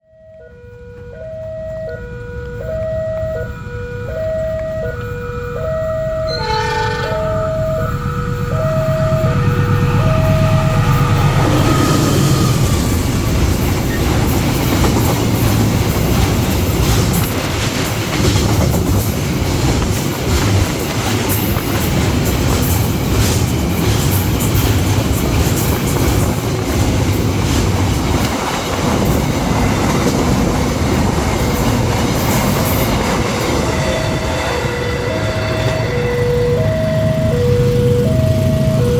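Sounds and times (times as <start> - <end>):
level crossing two-tone alarm: 0.0 - 12.7, 32.8 - 38.9
train wheels rumbling and clattering: 2.2 - 38.9
train horn blast: 5.4 - 13.1.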